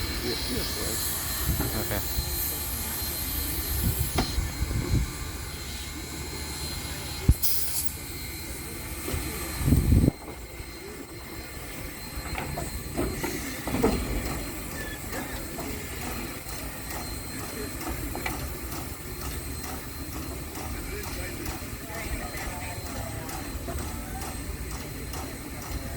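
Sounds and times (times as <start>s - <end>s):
steam hiss: 0.0s - 9.8s
steam locomotive working: 0.0s - 25.9s.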